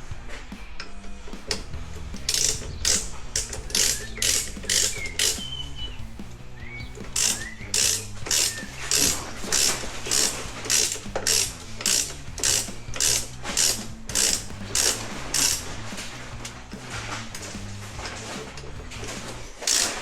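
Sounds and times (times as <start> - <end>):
ratchet wrench clicking: 1.5 - 5.8, 6.9 - 15.8, 19.6 - 20.0.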